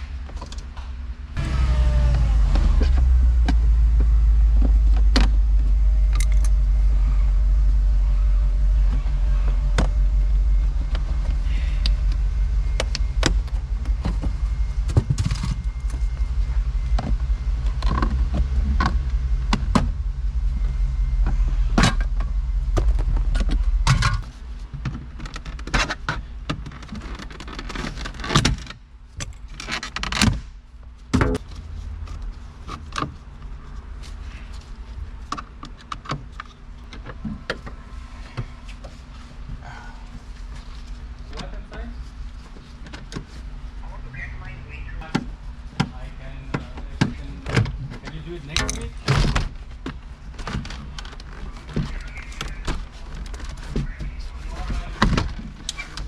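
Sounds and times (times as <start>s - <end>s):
loud low drone: 0.8s - 24.6s.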